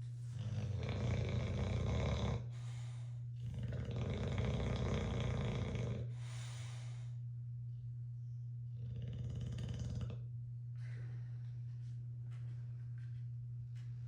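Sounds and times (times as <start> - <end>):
dog snoring: 0.2 - 7.2, 8.7 - 10.3.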